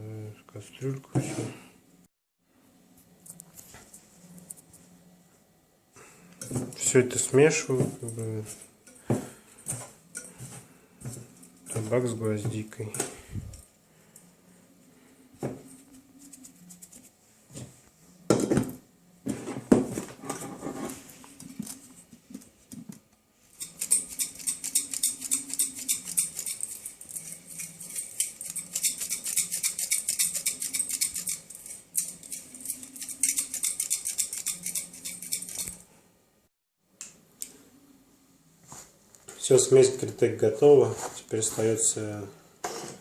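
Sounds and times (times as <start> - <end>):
dry tobacco stirred in pot: 15.7 - 17.2, 23.5 - 35.8
scratchy rustling: 15.7 - 17.2.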